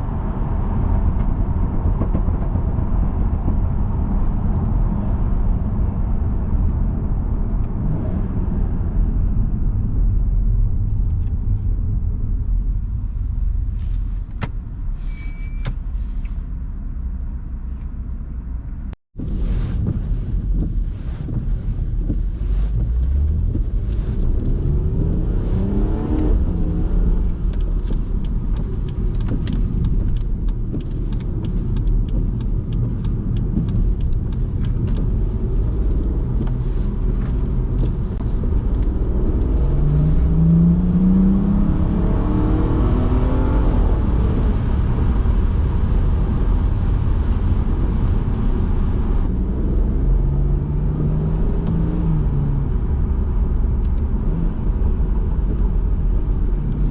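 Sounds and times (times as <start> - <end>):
car engine accelerating: 15.9 - 56.9.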